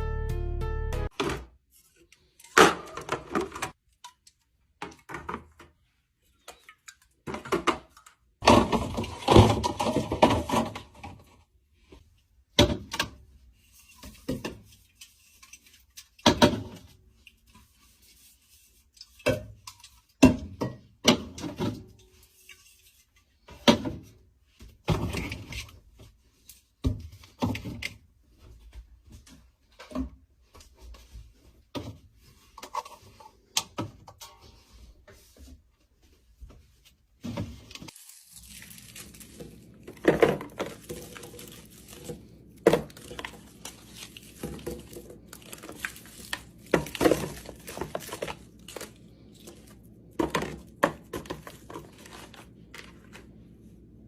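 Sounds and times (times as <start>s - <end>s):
containers knocking and clacking: 39.4s - 52.9s.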